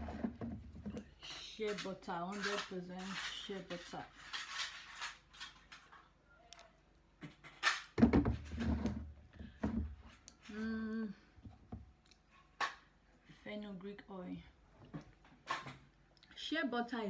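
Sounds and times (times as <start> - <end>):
containers knocking and clicking: 0.0 - 5.9, 7.2 - 10.0
woman humming: 10.5 - 11.2.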